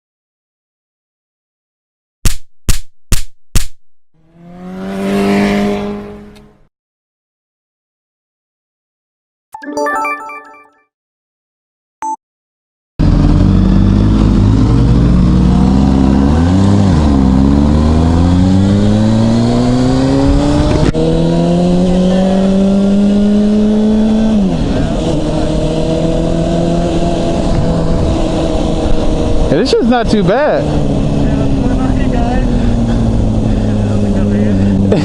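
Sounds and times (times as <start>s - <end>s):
motorcycle engine accelerating: 4.2s - 6.7s, 13.0s - 35.0s
wind rushing over microphone: 14.6s - 34.9s.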